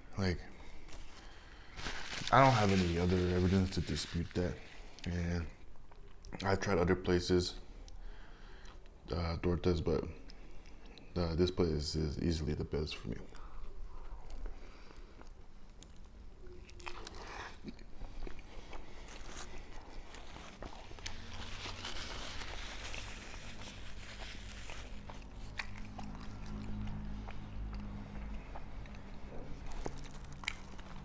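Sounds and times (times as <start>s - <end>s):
biting and chewing crunches: 14.0s - 31.0s.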